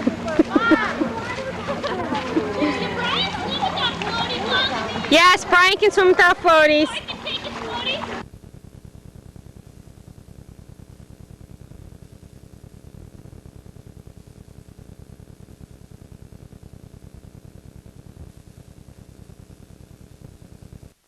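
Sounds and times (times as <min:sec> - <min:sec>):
static hiss with low pulsing: 0:00.0 - 0:21.0.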